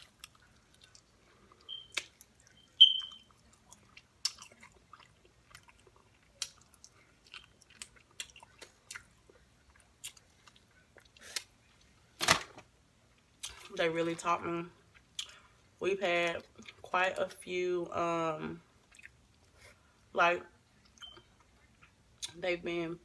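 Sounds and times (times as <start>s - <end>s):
person chewing: 0.0s - 11.5s, 14.9s - 15.4s, 18.8s - 19.6s.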